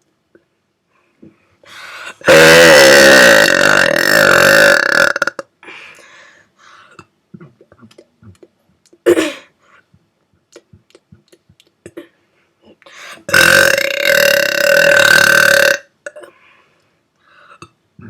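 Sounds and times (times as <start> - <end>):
person burping: 2.2 - 5.5, 13.3 - 16.3.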